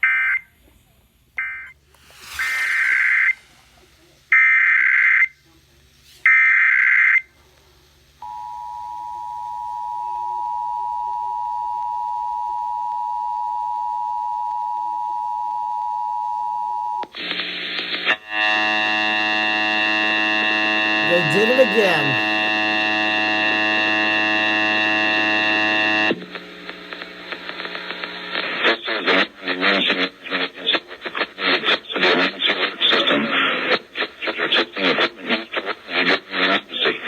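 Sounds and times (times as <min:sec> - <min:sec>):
harsh buzz: 0:02.0 - 0:04.2.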